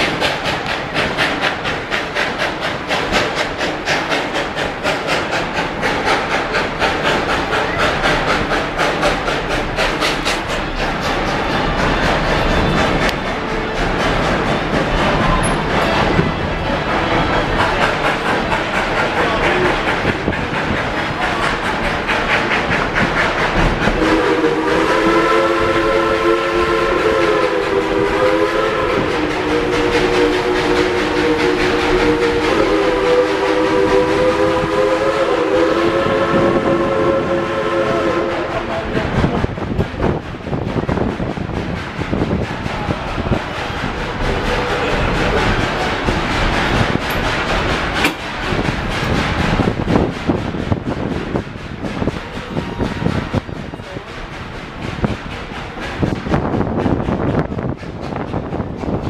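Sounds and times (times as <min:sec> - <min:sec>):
steam locomotive exhaust chuffing: 0:00.0 - 0:59.0
train wheels clattering: 0:00.0 - 0:59.0
train whistle: 0:23.4 - 0:38.9, 0:43.3 - 0:45.8.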